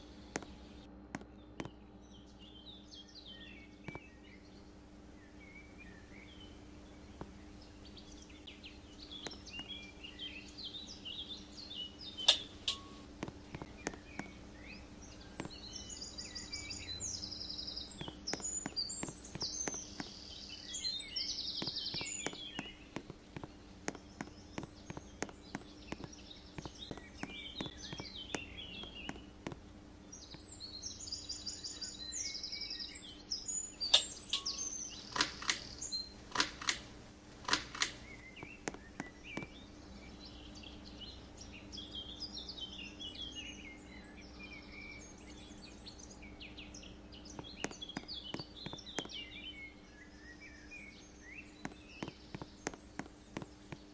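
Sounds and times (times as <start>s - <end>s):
birds chirping: 0.0s - 36.2s, 37.7s - 53.9s
loud clicks: 37.5s - 38.0s.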